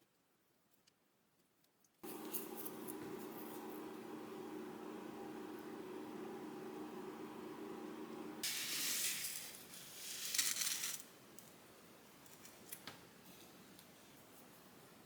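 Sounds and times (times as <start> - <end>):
steady low hum: 2.0 - 8.7.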